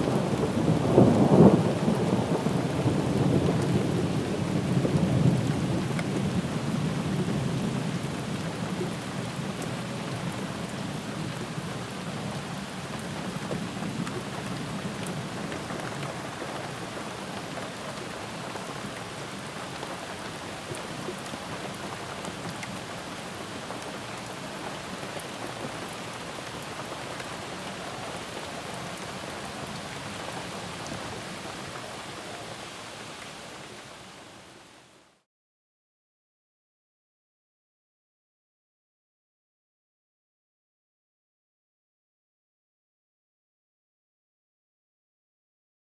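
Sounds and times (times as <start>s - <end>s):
low rumble of thunder: 0.0s - 9.4s
steady rain: 0.0s - 35.3s.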